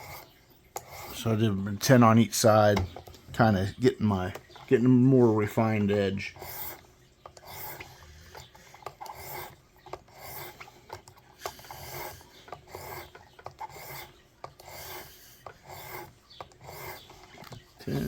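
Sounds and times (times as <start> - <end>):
sharpening stone rasping on knife: 0.0 - 1.2, 6.3 - 10.7, 11.4 - 17.3.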